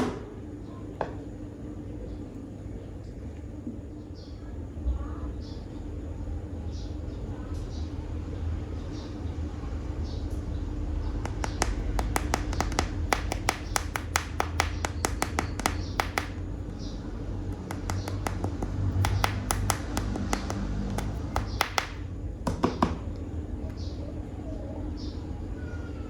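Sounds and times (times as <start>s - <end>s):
plastic toy figures clicking: 11.3s - 16.4s, 17.6s - 22.0s.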